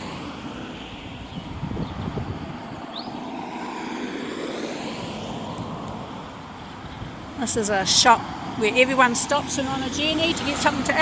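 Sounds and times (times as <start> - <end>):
vehicle driving past: 0.0 - 6.2.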